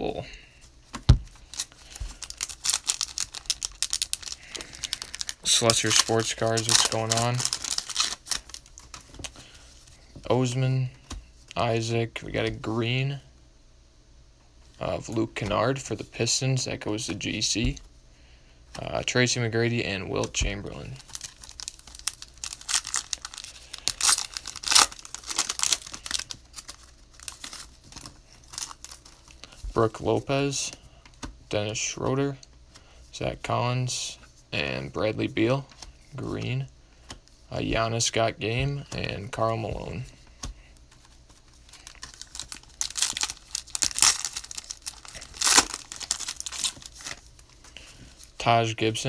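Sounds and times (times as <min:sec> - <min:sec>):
wrapper crinkling and tearing: 0:01.3 - 0:09.6, 0:20.9 - 0:29.4, 0:41.6 - 0:47.5.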